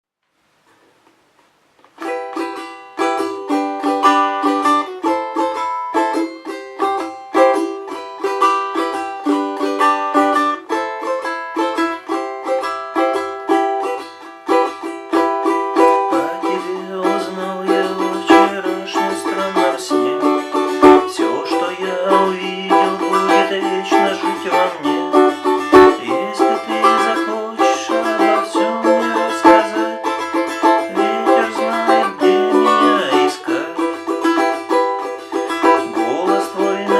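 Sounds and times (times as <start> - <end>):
balalaika strumming: 0.6 - 36.9.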